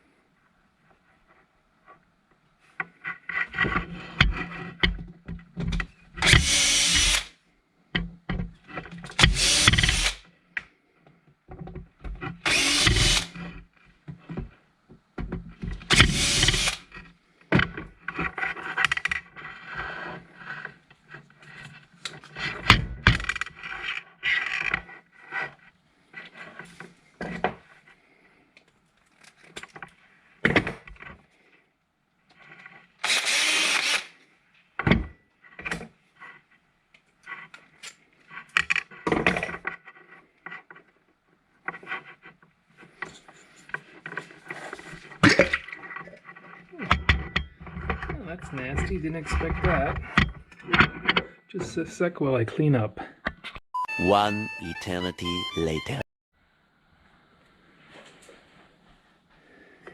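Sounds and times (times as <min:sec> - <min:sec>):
power drill bursts: 0:09.3 - 0:10.2, 0:12.5 - 0:13.3, 0:16.0 - 0:16.8, 0:33.0 - 0:34.1.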